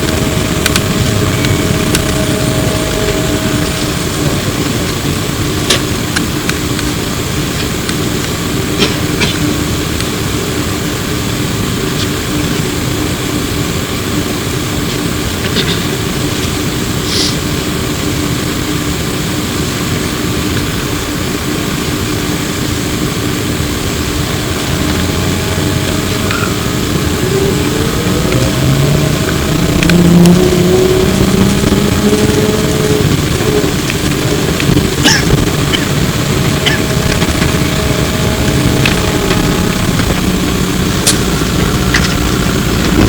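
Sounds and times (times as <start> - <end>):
motor whine rising in pitch: 0.0 - 7.4, 22.0 - 43.0
trolleybus running hum: 0.0 - 43.0.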